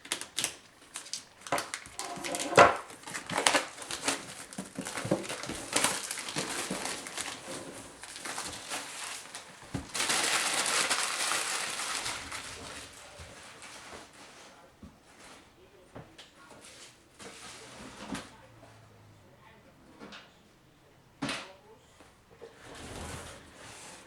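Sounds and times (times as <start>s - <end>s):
plastic packaging crinkling: 0.0s - 14.2s
steady rustling: 1.9s - 2.9s.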